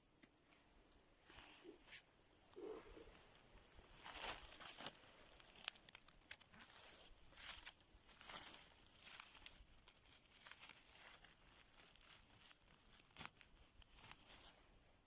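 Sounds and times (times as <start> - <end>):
footsteps through forest litter: 2.6 - 14.6.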